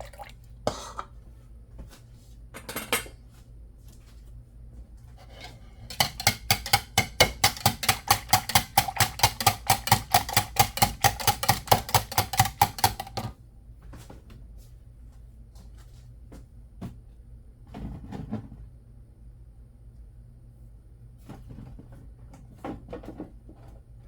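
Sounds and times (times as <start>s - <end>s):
whisk clinking against bowl: 5.9s - 13.2s.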